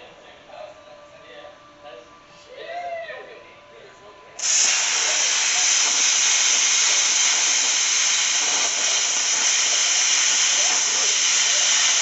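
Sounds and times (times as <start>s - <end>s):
loud rushing hiss: 4.4s - 12.0s.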